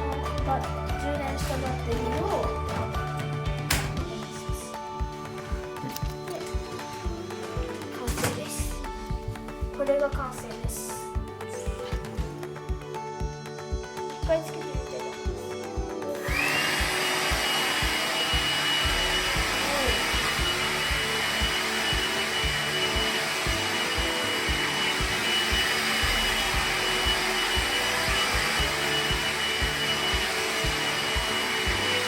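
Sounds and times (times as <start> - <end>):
vacuum motor whine: 16.2 - 32.0.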